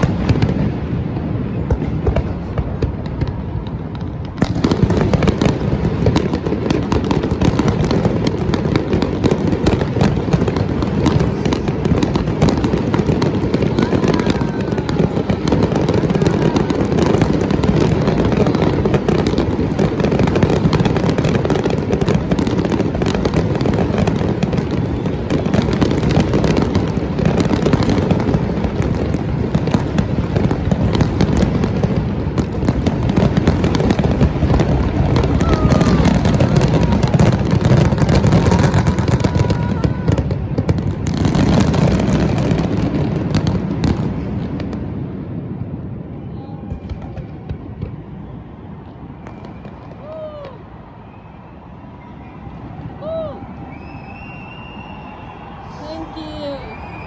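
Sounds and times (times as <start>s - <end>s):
fireworks bangs and crackles: 0.0s - 57.0s.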